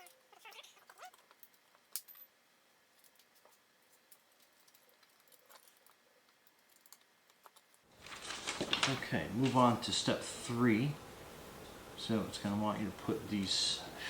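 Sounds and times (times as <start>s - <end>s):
metallic clinks of small hardware: 1.1s - 2.3s.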